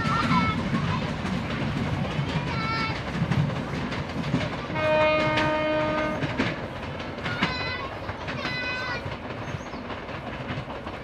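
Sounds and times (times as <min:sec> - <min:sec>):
train wheels clattering: 0:00.0 - 0:11.0
train horn blast: 0:04.7 - 0:06.4.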